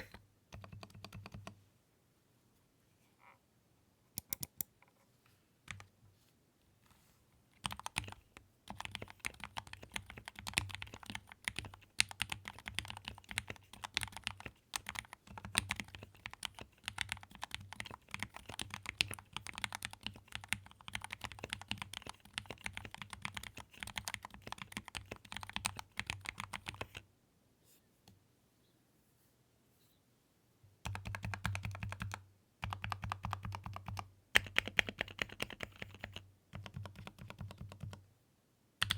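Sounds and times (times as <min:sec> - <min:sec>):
mechanical keyboard typing: 0:00.0 - 0:01.6, 0:07.6 - 0:27.0, 0:30.9 - 0:38.0.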